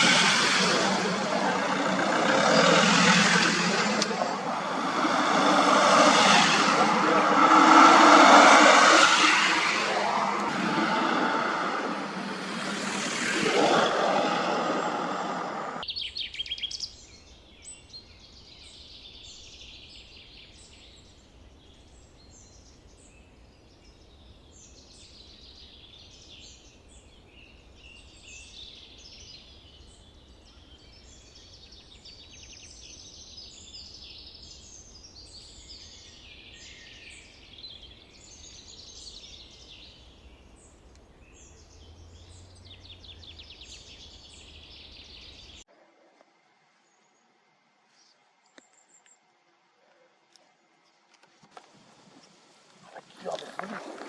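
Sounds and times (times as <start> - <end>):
loud rushing noise: 0.0 - 15.8
songbirds chirping and singing: 0.0 - 45.7.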